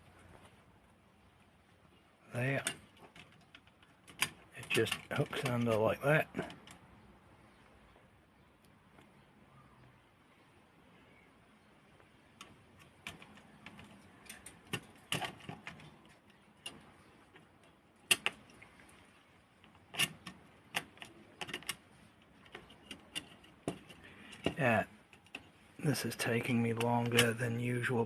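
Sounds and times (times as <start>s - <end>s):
typewriter metal parts clicking: 2.6s - 5.8s, 19.7s - 25.5s, 26.7s - 27.4s.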